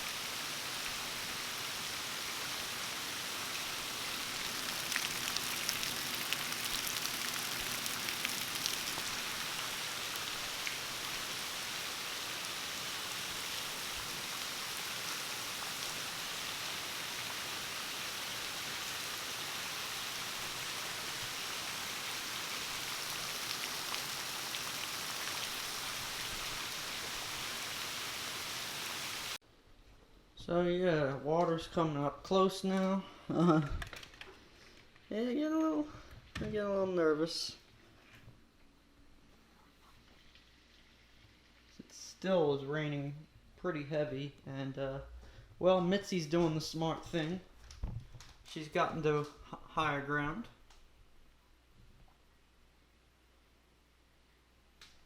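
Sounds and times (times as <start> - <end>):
heavy rain pouring: 0.0 - 29.4.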